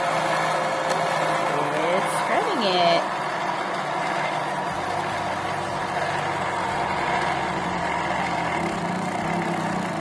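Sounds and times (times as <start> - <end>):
bobbin winder motor humming: 0.0 - 10.0.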